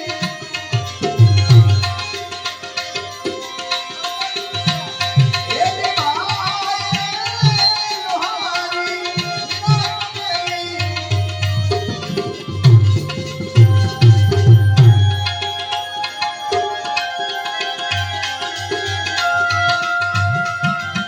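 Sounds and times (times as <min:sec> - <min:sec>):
tabla playing a rhythm: 0:00.0 - 0:21.0
ornamented melodic line: 0:11.8 - 0:21.0.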